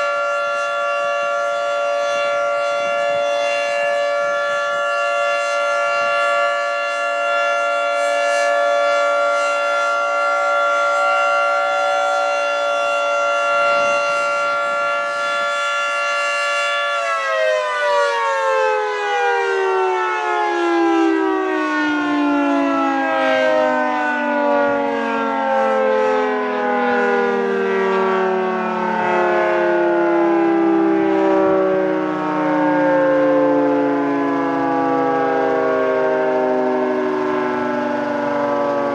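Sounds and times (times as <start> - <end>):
warning siren chord: 0.0 - 38.9.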